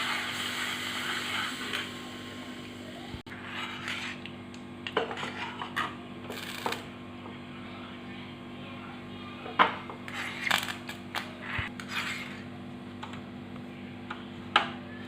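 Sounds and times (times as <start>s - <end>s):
steady low hum: 0.1s - 15.0s
metal spoon scraping in a pan: 3.3s - 4.3s, 5.0s - 5.8s, 11.4s - 12.5s.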